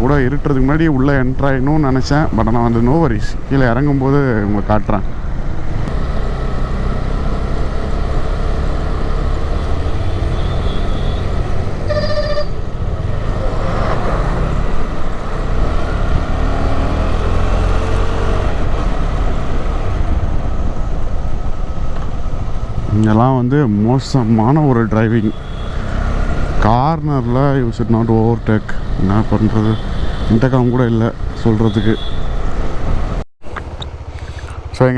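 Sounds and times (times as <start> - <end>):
motorcycle engine: 0.0 - 34.9
vehicle horn honk: 10.0 - 12.6, 25.2 - 25.9, 29.6 - 30.4, 31.6 - 32.4
wind rumble on microphone: 12.5 - 23.5.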